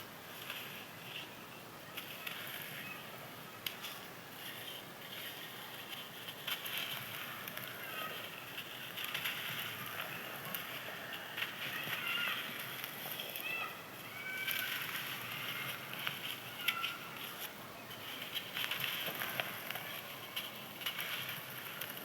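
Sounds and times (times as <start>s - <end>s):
dried sand clumps crunching: 0.0s - 22.0s.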